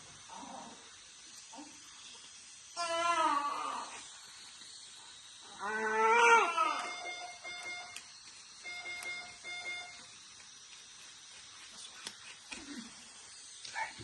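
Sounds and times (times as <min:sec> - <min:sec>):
medical monitor alarm beeps: 0:06.7 - 0:10.1.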